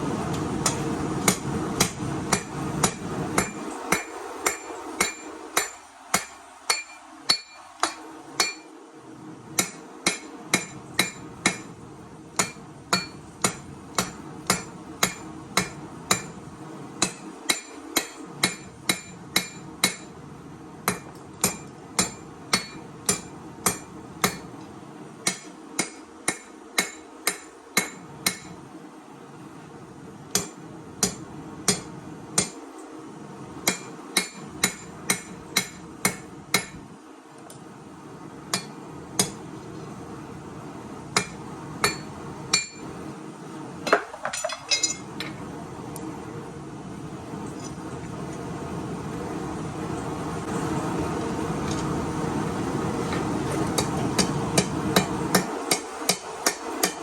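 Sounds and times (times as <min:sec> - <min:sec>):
hammer ringing on anvil: 0:02.3 - 0:08.7, 0:41.2 - 0:42.9.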